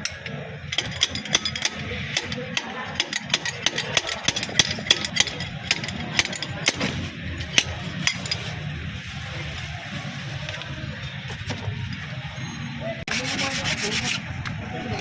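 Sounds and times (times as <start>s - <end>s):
hand tools and metal parts clinking: 0.0s - 9.2s, 10.4s - 12.4s.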